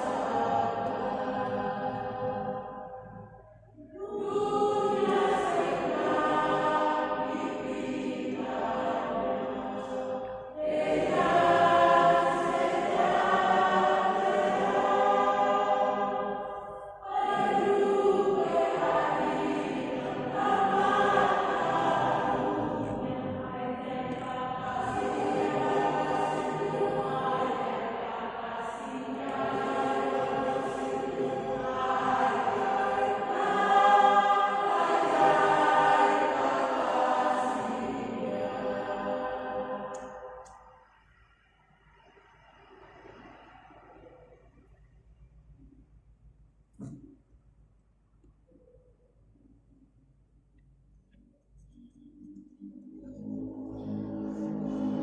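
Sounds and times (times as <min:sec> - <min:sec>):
choir singing held chords: 0:00.0 - 0:44.5, 0:52.6 - 0:55.0.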